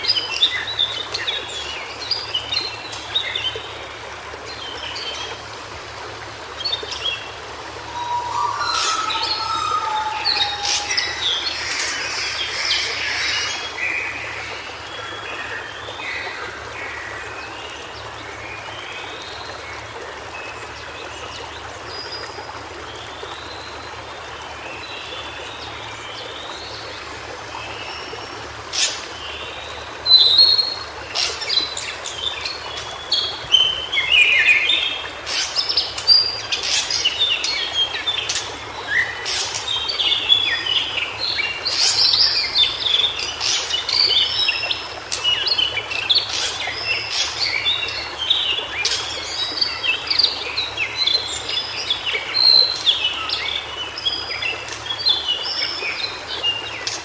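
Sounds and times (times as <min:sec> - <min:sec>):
steady background hiss: 0:00.0 - 0:57.0
bird warbling song: 0:06.6 - 0:15.4, 0:28.7 - 0:57.0.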